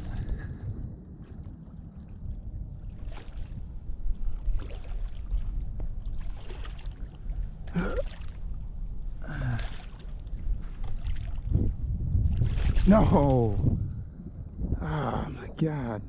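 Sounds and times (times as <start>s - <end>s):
wind buffeting microphone: 0.0s - 16.0s
water splashing: 1.2s - 13.6s.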